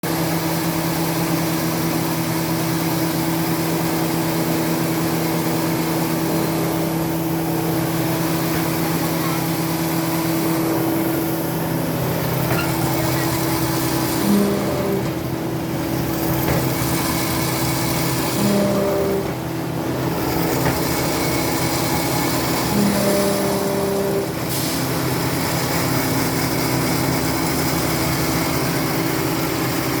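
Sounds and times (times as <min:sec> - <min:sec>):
paper cutting machine hum: 0:00.0 - 0:30.0
hiss: 0:21.0 - 0:27.6.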